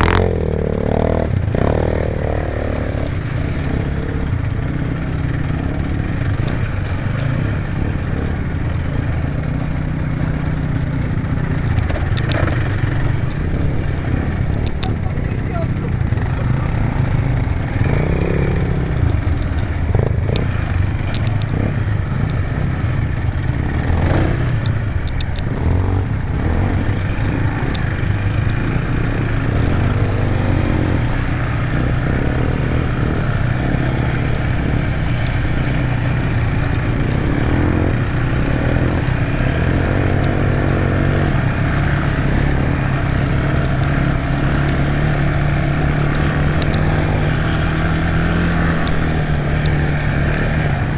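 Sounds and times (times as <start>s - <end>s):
quad bike engine revving: 0.0s - 50.9s
sharp clicks: 10.5s - 29.6s, 43.4s - 50.9s.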